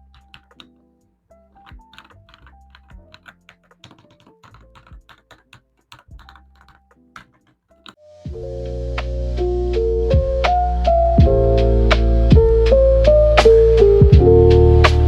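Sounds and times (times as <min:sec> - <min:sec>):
mechanical keyboard clicks: 0:00.0 - 0:00.9, 0:01.6 - 0:08.0
background music: 0:00.0 - 0:15.0.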